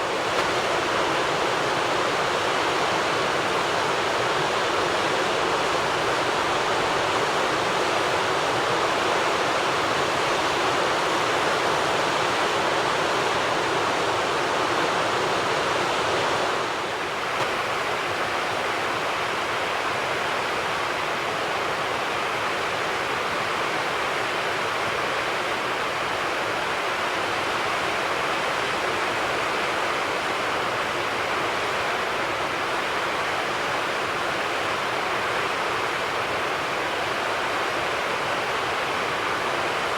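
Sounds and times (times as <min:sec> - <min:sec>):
flowing water rushing: 0:00.0 - 0:18.6.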